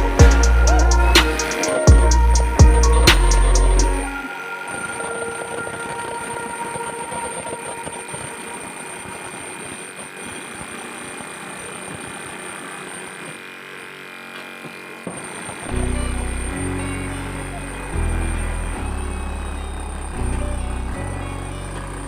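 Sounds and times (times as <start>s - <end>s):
jackhammer: 6.7s - 22.0s.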